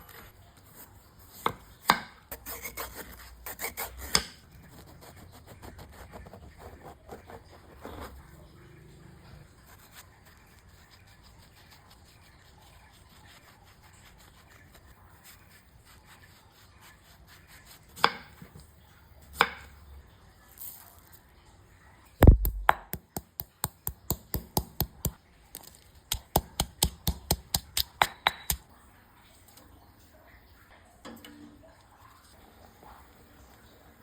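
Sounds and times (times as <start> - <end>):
knife chopping on cutting board: 1.4 - 2.9, 3.5 - 4.4, 17.9 - 18.6, 22.2 - 25.2, 26.1 - 28.6.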